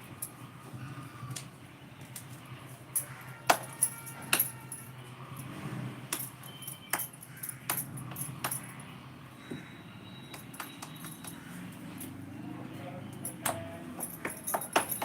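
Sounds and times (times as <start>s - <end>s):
utensils clinking against dishes: 13.1s - 15.0s.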